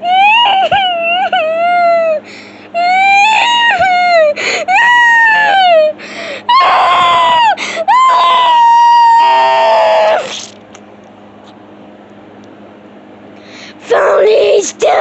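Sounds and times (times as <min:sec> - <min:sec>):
person wailing and crying: 0:00.0 - 0:10.4
sharp gasps: 0:02.2 - 0:02.7, 0:06.0 - 0:06.4, 0:13.4 - 0:13.8.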